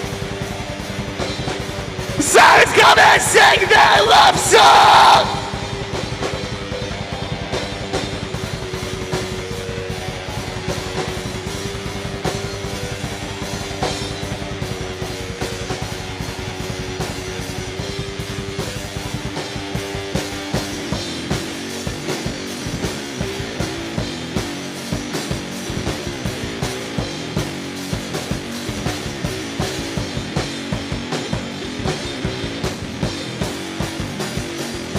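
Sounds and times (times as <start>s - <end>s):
rock band playing: 0.0s - 17.1s.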